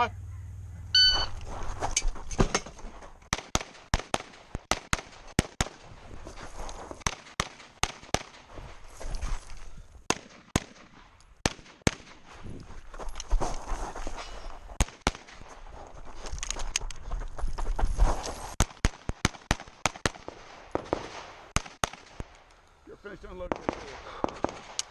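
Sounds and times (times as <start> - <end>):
shot timer beep: 1.0 - 1.4
pistol shots: 3.3 - 5.8, 7.0 - 8.5, 10.1 - 12.2, 18.6 - 22.4, 23.4 - 24.9.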